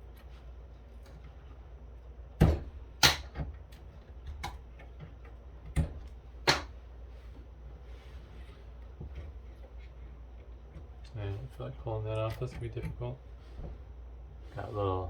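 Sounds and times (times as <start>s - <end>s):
sharp knocks of parts handled: 2.4s - 6.8s.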